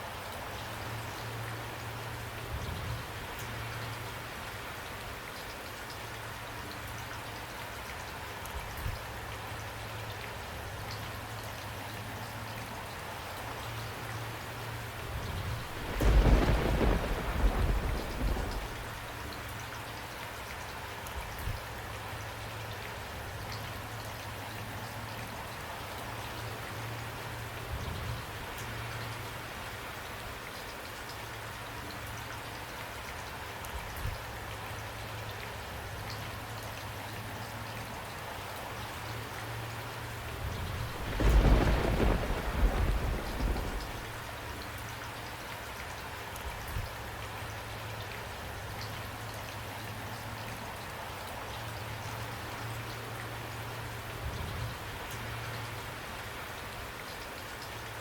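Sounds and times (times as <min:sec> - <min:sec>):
steady rain: 0:00.0 - 0:58.0
thunder rumble: 0:14.9 - 0:19.1, 0:40.2 - 0:44.6.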